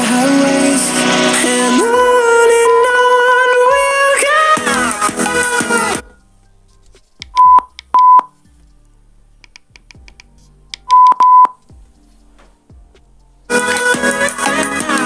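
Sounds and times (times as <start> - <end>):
song through a speaker: 0.0 - 15.0
short electronic beeps: 7.4 - 8.3, 10.9 - 11.6.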